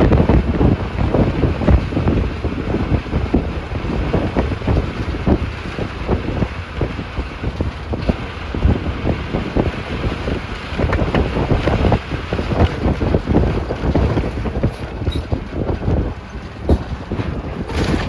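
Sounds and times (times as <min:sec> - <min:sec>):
bus body rattling and knocking: 0:00.0 - 0:18.0
bus engine running: 0:00.0 - 0:18.0
wind on microphone: 0:00.0 - 0:18.0.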